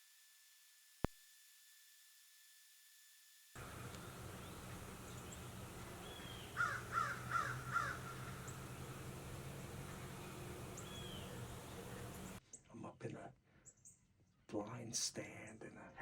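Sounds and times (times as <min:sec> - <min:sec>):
crow cawing: 0:03.6 - 0:12.4
steady low hum: 0:03.6 - 0:12.4.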